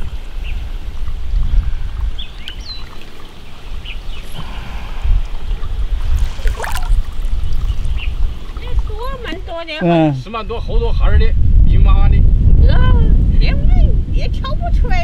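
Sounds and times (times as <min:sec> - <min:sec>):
muddy water sloshing: 0:00.0 - 0:10.1
bird chirps: 0:02.2 - 0:04.4
splash: 0:05.6 - 0:09.1.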